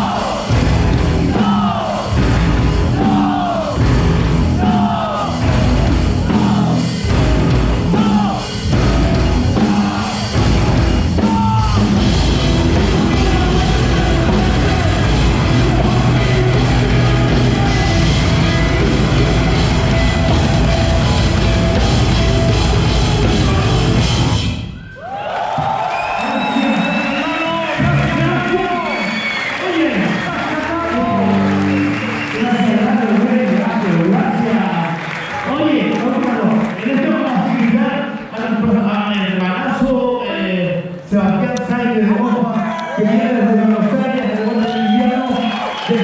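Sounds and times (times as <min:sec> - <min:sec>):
shouted vocals: 0:00.0 - 0:03.9, 0:04.5 - 0:33.4
rock band playing live: 0:00.0 - 0:24.8, 0:30.8 - 0:33.4
drums: 0:00.0 - 0:35.7.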